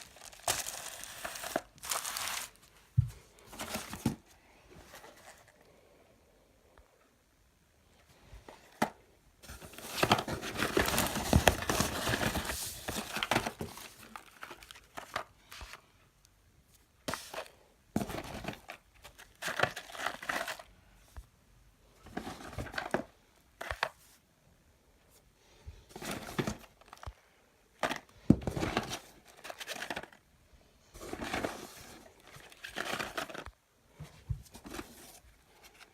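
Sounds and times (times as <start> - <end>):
packaging crinkling and tearing: 0.0 - 2.7
packaging rustling: 0.0 - 2.8, 9.4 - 15.8, 17.1 - 20.7, 27.8 - 30.2, 31.0 - 33.6.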